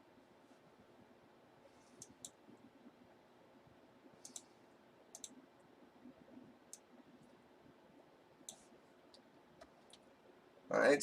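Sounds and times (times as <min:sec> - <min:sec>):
faint sharp clicks: 0:04.2 - 0:04.5, 0:05.1 - 0:05.4, 0:08.4 - 0:10.1.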